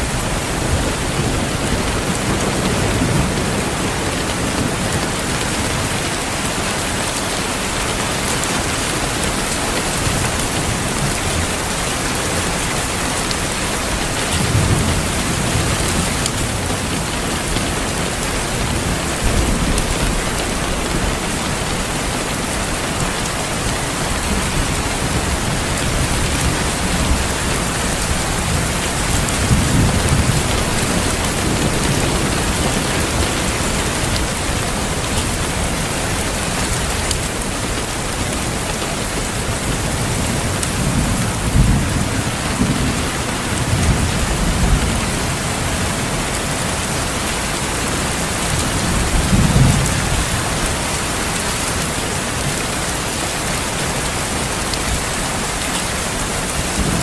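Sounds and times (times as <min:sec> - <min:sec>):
thunder rumbling: 0:00.0 - 0:52.6
steady rain falling: 0:00.0 - 0:57.0.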